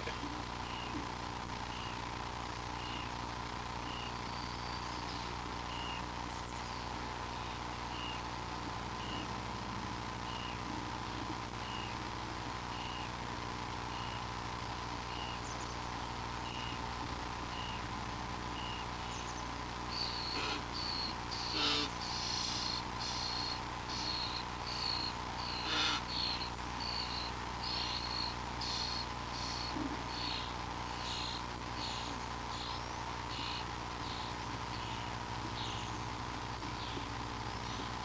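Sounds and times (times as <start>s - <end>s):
steady electrical hum: 0.0s - 38.0s
small animal chirping: 19.9s - 35.9s.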